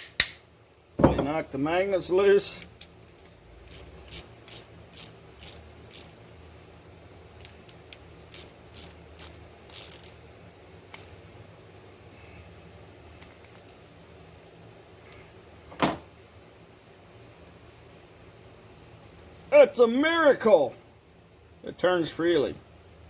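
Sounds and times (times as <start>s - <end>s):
loud knock: 1.0s - 1.3s.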